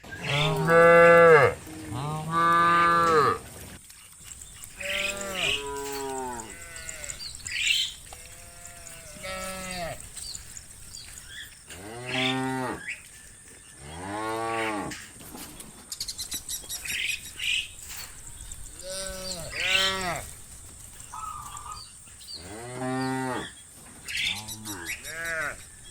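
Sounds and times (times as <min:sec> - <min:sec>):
cattle mooing: 0:00.2 - 0:03.4, 0:04.7 - 0:13.0, 0:18.7 - 0:20.4, 0:22.4 - 0:23.6, 0:24.2 - 0:25.6.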